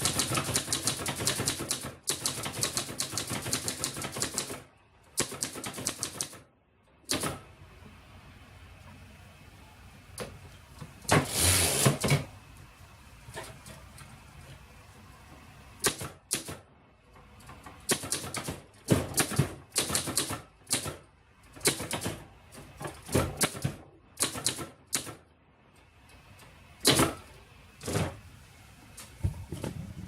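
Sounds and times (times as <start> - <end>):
typewriter typing: 0.0 - 4.6, 5.2 - 6.4.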